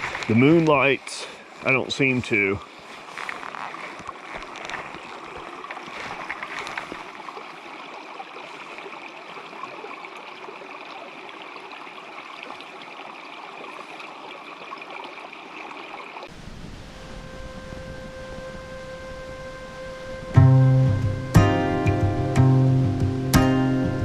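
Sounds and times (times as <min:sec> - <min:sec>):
brook gurgling over rocks: 0:00.0 - 0:16.4
guitar and bass music: 0:20.2 - 0:24.0.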